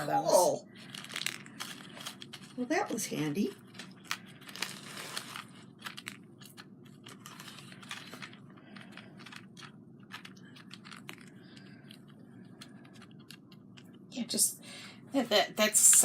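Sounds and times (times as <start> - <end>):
small hard pieces clicking and rattling: 0.8 - 3.0, 3.7 - 14.0.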